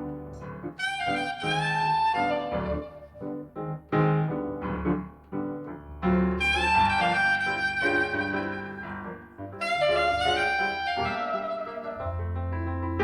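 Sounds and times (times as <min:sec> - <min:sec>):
jazz piano: 0:00.0 - 0:13.0
soprano saxophone: 0:00.8 - 0:03.5, 0:06.4 - 0:13.0.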